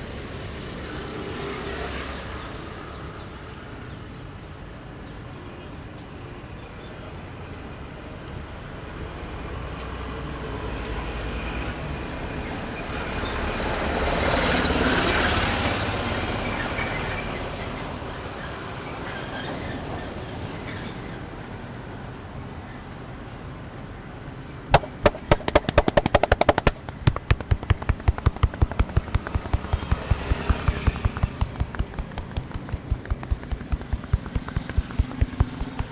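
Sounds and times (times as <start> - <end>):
rapid rhythmic hand slaps: 24.8 - 35.9
street noise: 24.8 - 35.9.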